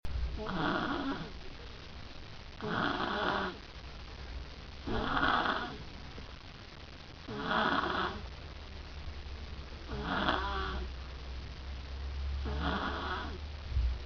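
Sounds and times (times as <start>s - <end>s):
quiet breaths: 0.3s - 14.0s
girl snoring: 0.4s - 1.4s, 2.6s - 3.6s, 4.8s - 5.9s, 7.3s - 8.2s, 9.9s - 10.9s, 12.4s - 13.4s.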